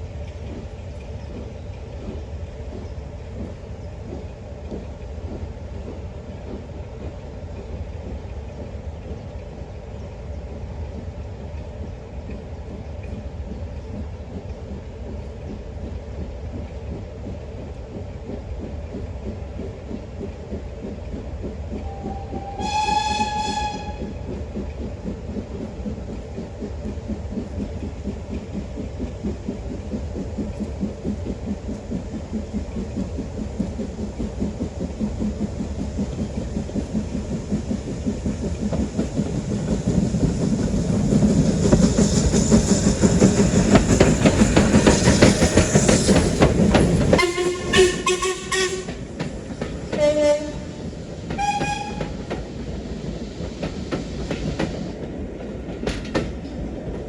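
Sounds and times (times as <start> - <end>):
train wheels beating on rails: 0.0 - 57.0
train whistle: 21.8 - 24.2, 47.2 - 49.0, 50.0 - 52.2.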